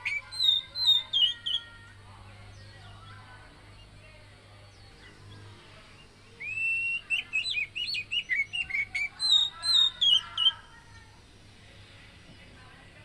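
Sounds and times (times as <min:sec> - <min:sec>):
bird singing whistled song: 0:00.0 - 0:01.7, 0:06.0 - 0:10.6.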